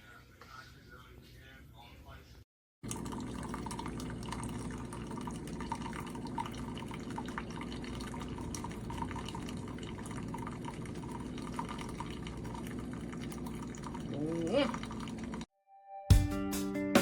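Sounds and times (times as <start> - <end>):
coffee dripping into cup: 2.8 - 15.5
coffee maker humming: 2.8 - 15.5.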